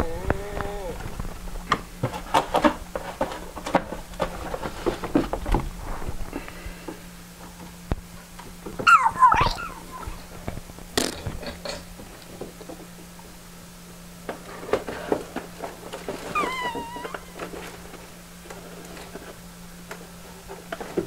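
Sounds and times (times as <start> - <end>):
cat meowing: 8.9 - 10.3, 16.3 - 17.4.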